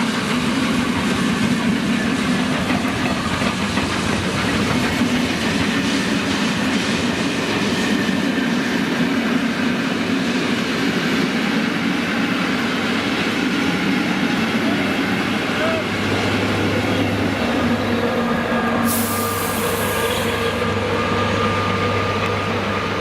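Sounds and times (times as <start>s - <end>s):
train wheels rumbling on track: 0.0s - 23.0s
wheels clattering over rail joints: 0.8s - 7.1s.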